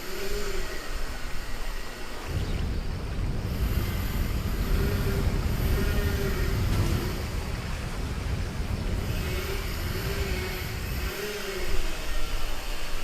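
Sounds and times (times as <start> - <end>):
rushing water: 2.1 - 12.0
wind buffeting microphone: 2.2 - 12.0.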